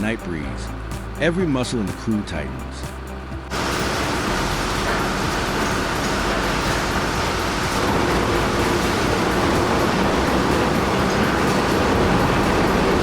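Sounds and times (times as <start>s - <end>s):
heavy machinery engine running: 3.2s - 13.0s.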